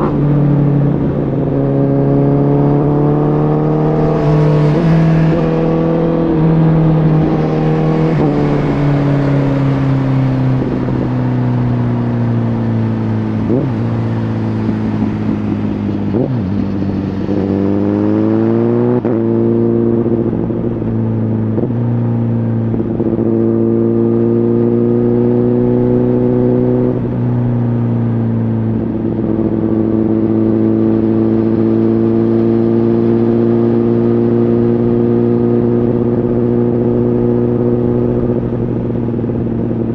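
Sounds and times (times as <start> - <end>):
motorcycle engine running: 0.0 - 18.2.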